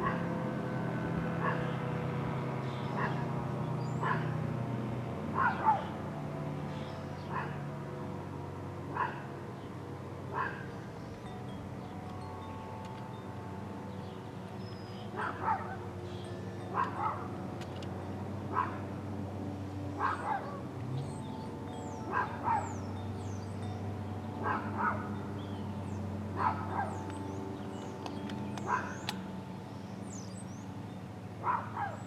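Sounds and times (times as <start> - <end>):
dog barking: 1.4 - 1.8, 3.0 - 3.2, 4.0 - 4.3, 5.4 - 6.0, 7.3 - 7.6, 9.0 - 9.2, 10.3 - 10.7, 15.2 - 15.8, 16.7 - 17.3, 18.5 - 18.8, 20.0 - 20.6, 22.1 - 22.8, 24.4 - 25.1, 26.4 - 27.0, 31.4 - 32.0.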